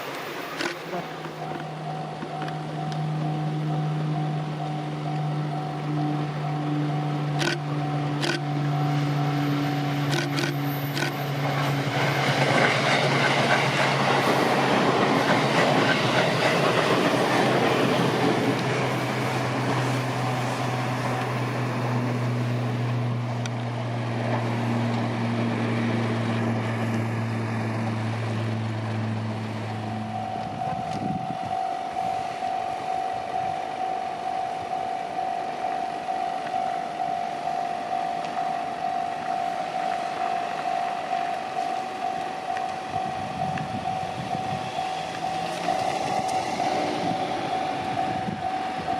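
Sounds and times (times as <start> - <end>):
level crossing warning bell: 0.0 - 24.0, 28.0 - 48.9
train low hum: 0.0 - 48.9
train wheels clattering on rails: 7.3 - 29.1.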